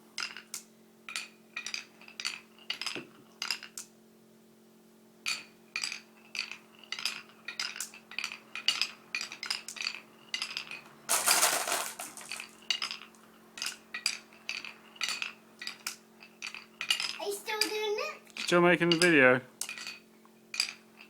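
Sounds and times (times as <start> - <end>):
marbles clicking down a marble run: 5.3 - 17.7.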